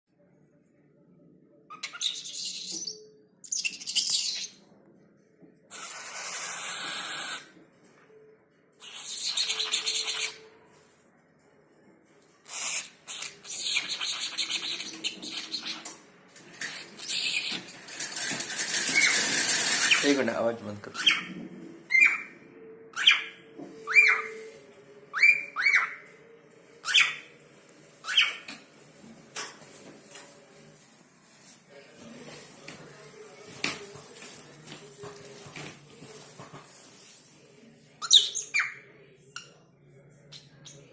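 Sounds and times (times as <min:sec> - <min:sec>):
cockatiel hissing calls: 0:05.7 - 0:07.5, 0:08.8 - 0:10.4, 0:12.5 - 0:15.8.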